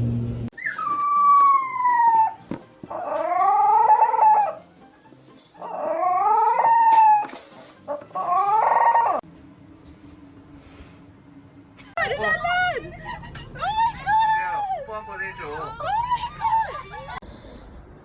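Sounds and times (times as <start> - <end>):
dog howling: 0.6 - 4.6, 5.6 - 9.2, 12.5 - 17.2.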